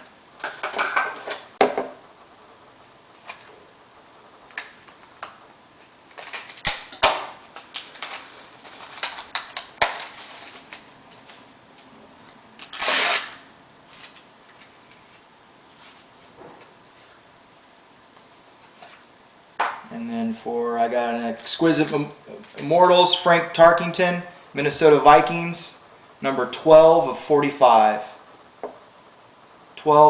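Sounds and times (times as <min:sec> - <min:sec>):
cards rustling: 0:06.1 - 0:16.2.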